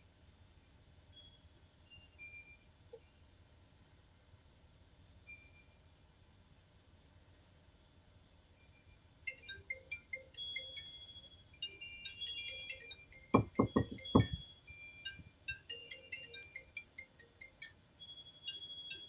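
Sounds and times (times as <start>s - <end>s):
high short ringing tones: 9.3s - 19.0s
dull knocks: 13.4s - 14.4s.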